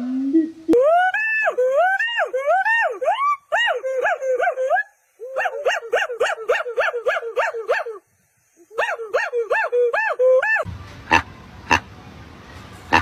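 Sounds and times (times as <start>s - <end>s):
monkey yelping calls: 0.8s - 8.0s, 8.8s - 11.8s.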